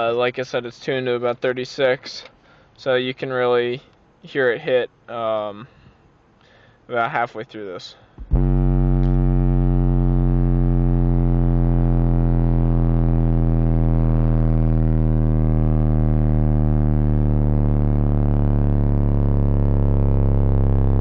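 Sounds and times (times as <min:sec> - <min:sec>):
subwoofer sine sweep drone: 0:08.1 - 0:21.0.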